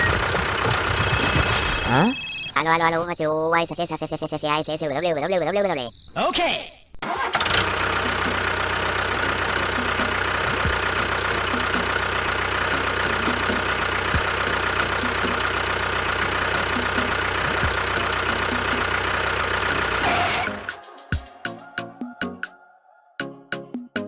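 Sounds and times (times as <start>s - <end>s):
motor humming: 0.0s - 2.6s, 7.5s - 20.7s
fast even ticking: 7.8s - 20.0s.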